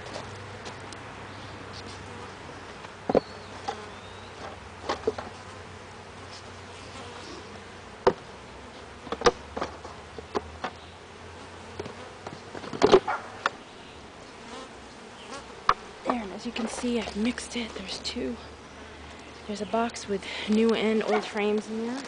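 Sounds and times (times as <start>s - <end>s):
honeybees buzzing: 0.0s - 22.0s.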